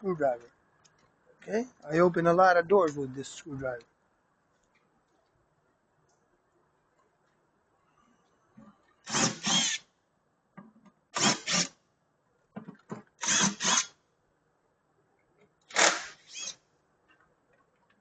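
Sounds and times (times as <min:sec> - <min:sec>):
power drill bursts: 0:09.0 - 0:09.8, 0:11.2 - 0:11.7, 0:13.2 - 0:14.0, 0:15.7 - 0:16.6.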